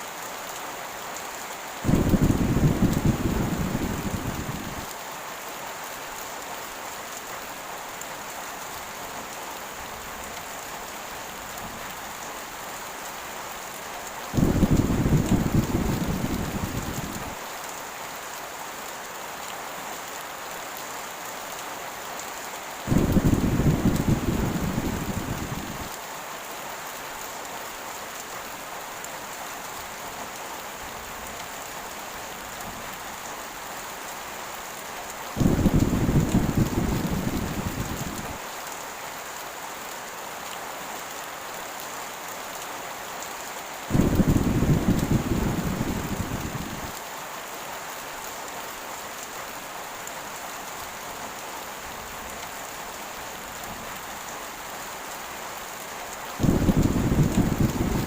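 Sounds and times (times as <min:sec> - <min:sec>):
heavy rain: 0:00.0 - 0:58.0
thunder rolling: 0:01.9 - 0:04.8, 0:14.4 - 0:17.3, 0:22.9 - 0:25.9, 0:35.4 - 0:38.4, 0:43.9 - 0:46.9, 0:56.4 - 0:58.0.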